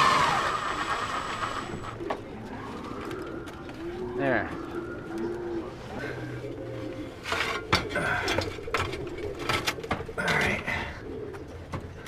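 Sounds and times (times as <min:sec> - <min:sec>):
pigeons cooing: 0:00.0 - 0:12.0
scraping handling sounds: 0:07.1 - 0:10.6.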